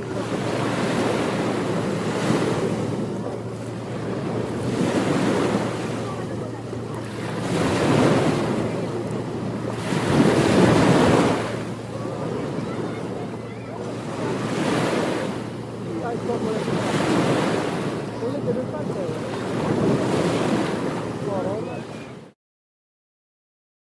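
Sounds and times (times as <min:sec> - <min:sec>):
ocean waves breaking: 0:00.0 - 0:22.4.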